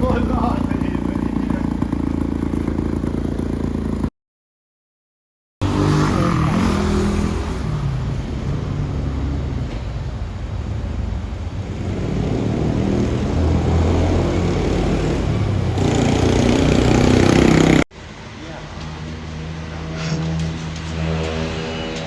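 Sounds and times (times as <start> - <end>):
scooter engine revving: 0.0 - 4.1, 5.6 - 17.9.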